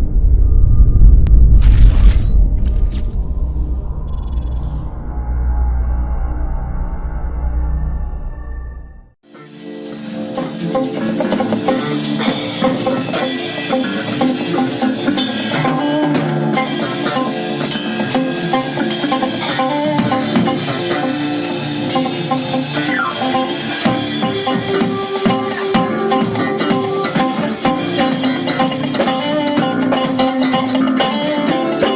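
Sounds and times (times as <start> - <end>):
electric guitar: 9.3 - 31.9
keyboards: 9.3 - 31.9
drum kit: 9.6 - 31.9.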